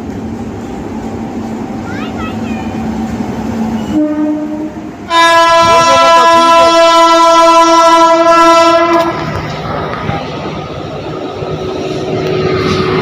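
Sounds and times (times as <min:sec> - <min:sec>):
train running: 0:00.0 - 0:13.0
train horn: 0:03.8 - 0:09.4.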